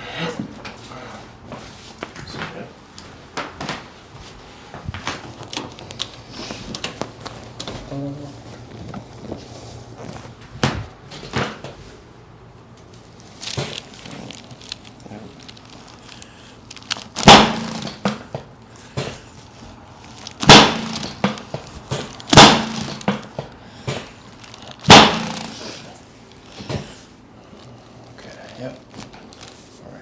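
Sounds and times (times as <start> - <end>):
thumps with joint cracks: 8.5 - 11.8, 12.8 - 27.1.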